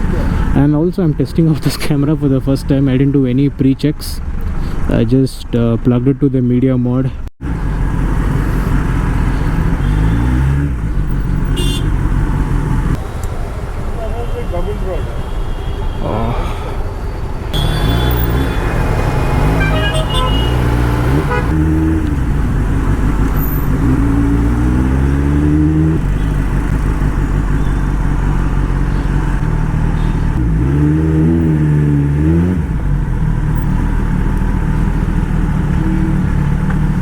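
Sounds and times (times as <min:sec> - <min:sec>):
motorcycle engine accelerating: 0:07.4 - 0:13.0, 0:17.6 - 0:37.0.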